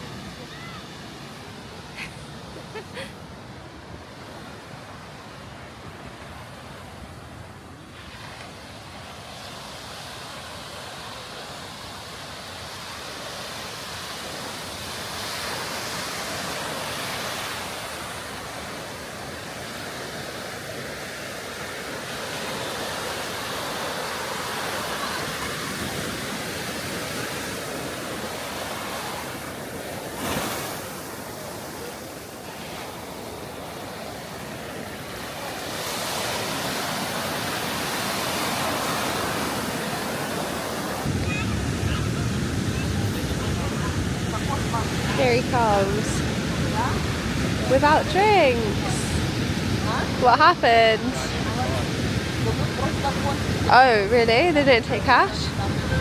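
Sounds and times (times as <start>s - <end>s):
waves breaking on a beach: 0.0s - 56.0s.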